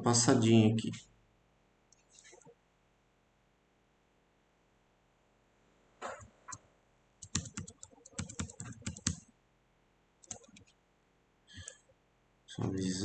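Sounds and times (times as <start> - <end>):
computer keyboard typing: 7.2 - 9.2, 10.2 - 10.7.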